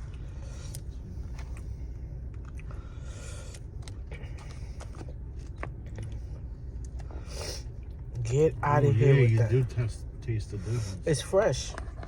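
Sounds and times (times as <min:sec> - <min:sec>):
chewing and biting food: 0:00.0 - 0:08.2.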